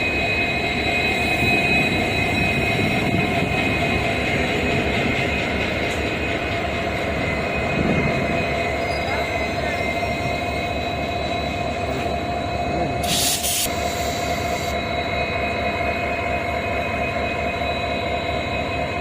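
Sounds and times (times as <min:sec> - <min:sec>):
train rumbling: 0:00.0 - 0:19.0
short sharp hiss: 0:13.0 - 0:14.2.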